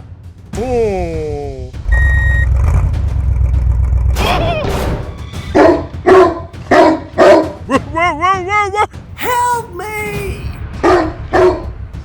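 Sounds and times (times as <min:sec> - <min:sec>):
music: 0:00.0 - 0:12.0
deep low rumble: 0:01.8 - 0:04.2
short high beep: 0:01.9 - 0:02.5
dog barking: 0:05.5 - 0:07.8, 0:10.8 - 0:11.8.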